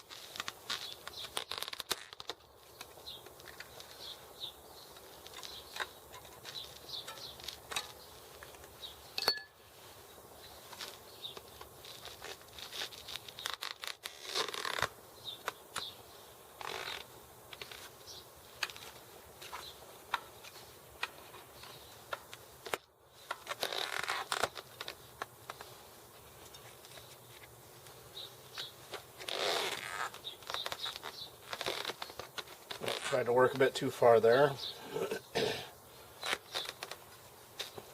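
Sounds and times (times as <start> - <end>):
rubber rubbing against rim: 0.0 - 4.2, 9.7 - 15.6, 16.6 - 27.9, 28.6 - 33.5, 36.2 - 37.9
sharp metallic ting: 9.2 - 9.6.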